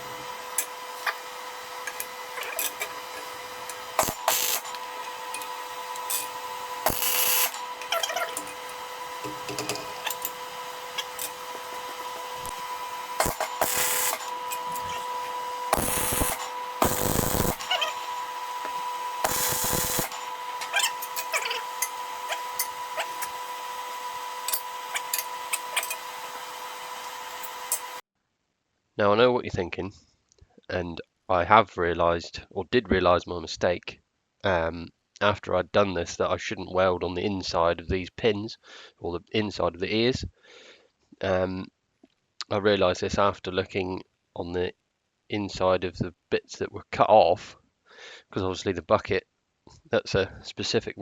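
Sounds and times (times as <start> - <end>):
steady electrical hum: 0.0 - 27.9
power tool bursts: 0.0 - 28.0.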